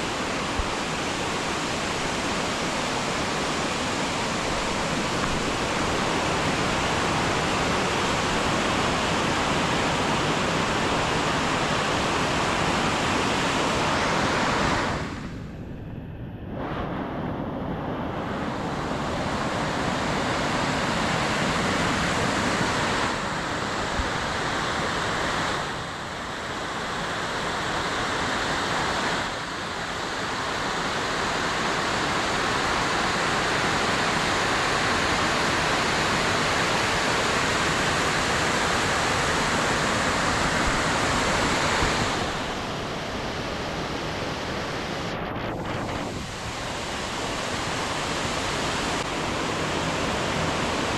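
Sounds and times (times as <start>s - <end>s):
waterfall rushing water: 0.0s - 15.2s, 19.2s - 50.9s.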